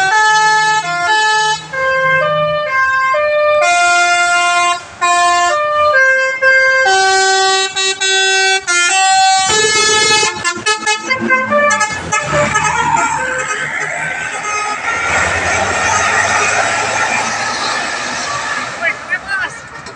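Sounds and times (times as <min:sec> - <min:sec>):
bus musical horn playing tune: 0:03.6 - 0:15.4.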